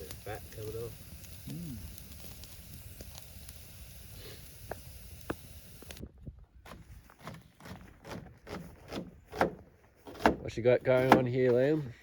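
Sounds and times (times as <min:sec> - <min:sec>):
campfire crackling and popping: 0:00.0 - 0:06.1.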